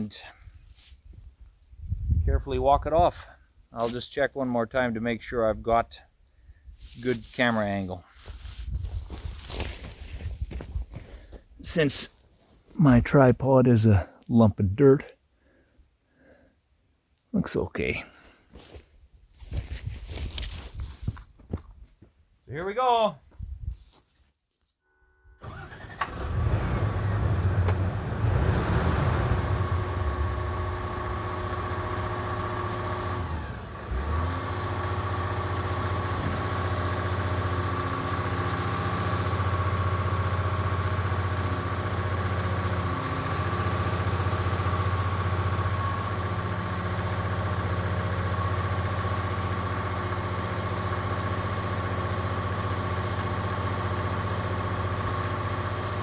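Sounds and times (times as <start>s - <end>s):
diesel engine starting and running: 25.0s - 56.0s.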